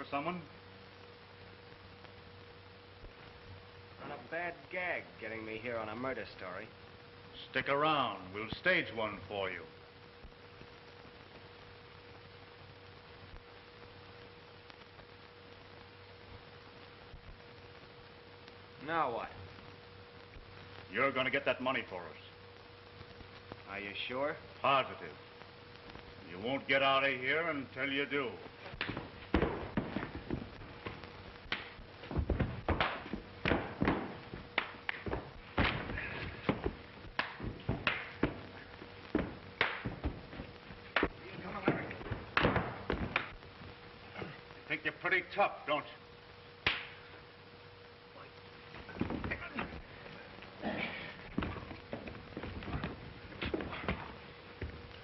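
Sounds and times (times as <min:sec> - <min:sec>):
faint crackles: 0:00.0 - 0:55.0
film soundtrack hiss and hum: 0:00.0 - 0:55.0
thuds and knocks of scuffle: 0:28.8 - 0:43.3, 0:51.3 - 0:54.8.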